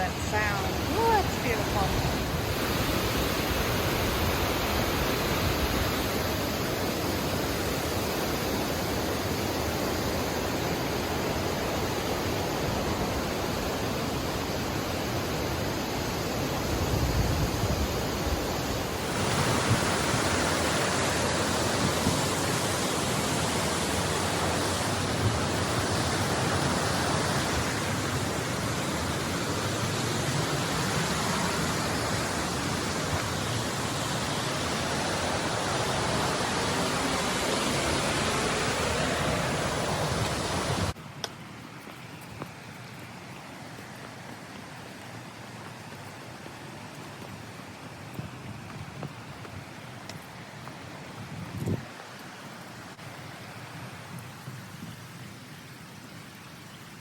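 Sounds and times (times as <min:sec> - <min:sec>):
waterfall rushing: 0:00.0 - 0:41.8.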